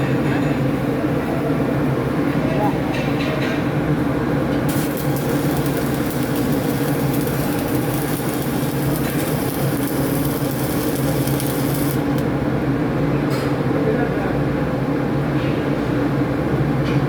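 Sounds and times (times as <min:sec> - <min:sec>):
steady low hum: 0:03.9 - 0:13.0
welding arc crackling and hissing: 0:04.7 - 0:12.4.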